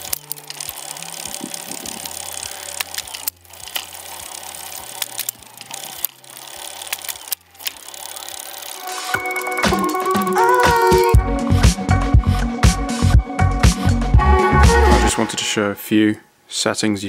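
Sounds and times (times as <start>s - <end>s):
electric bike motor running: 0.0s - 10.6s
gear change clicks: 0.0s - 11.1s.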